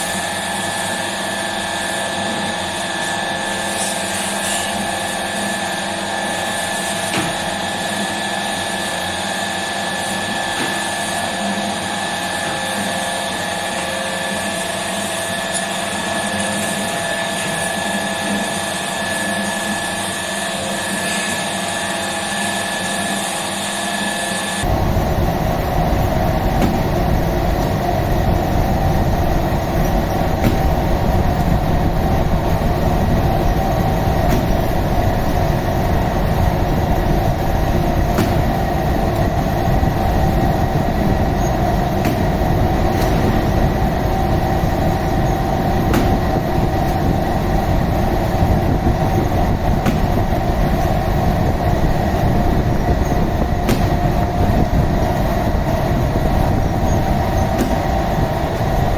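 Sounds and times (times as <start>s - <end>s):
machine rumble and hum: 24.6s - 58.9s.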